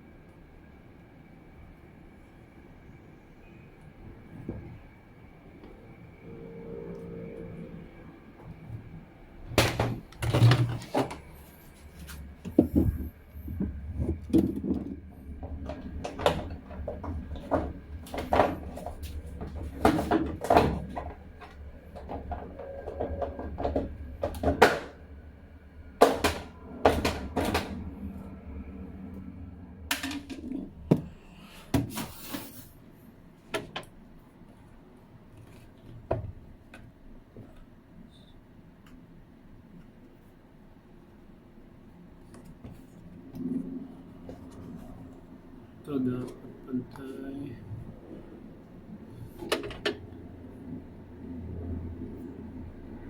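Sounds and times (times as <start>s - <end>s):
hard parts knocking and clattering: 12.4s - 25.0s, 26.0s - 27.9s.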